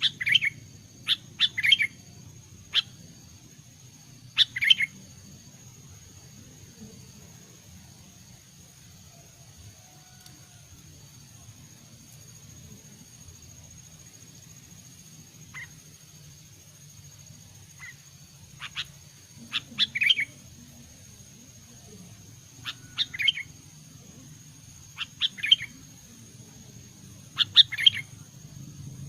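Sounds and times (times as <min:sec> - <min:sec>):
bulbul singing: 0:00.0 - 0:07.2, 0:14.2 - 0:29.0.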